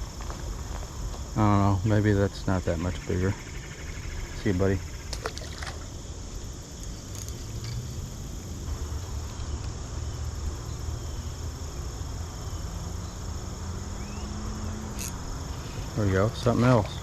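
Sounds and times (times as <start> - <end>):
insects trilling: 0.0 - 17.0
faint hum rising in pitch: 5.7 - 17.0.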